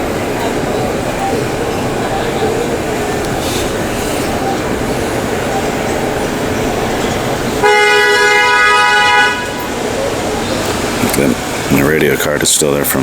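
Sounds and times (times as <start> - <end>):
street traffic: 0.0 - 13.0
car horn blowing: 7.6 - 9.8.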